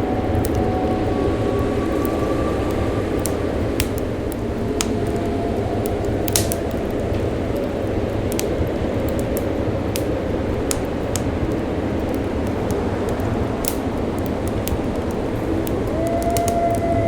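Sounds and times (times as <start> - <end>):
low rush of wind: 0.0 - 17.0
wood fire crackling: 0.0 - 17.0.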